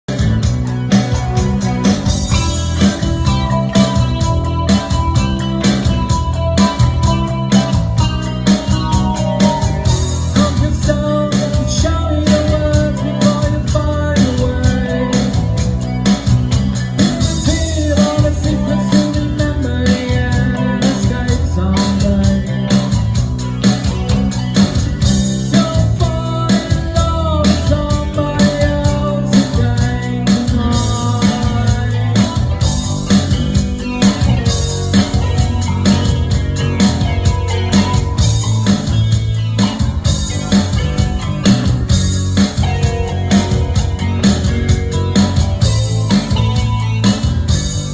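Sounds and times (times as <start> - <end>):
rock band playing: 0.0 - 47.9
person singing: 9.2 - 15.9, 17.0 - 23.2, 25.2 - 32.6.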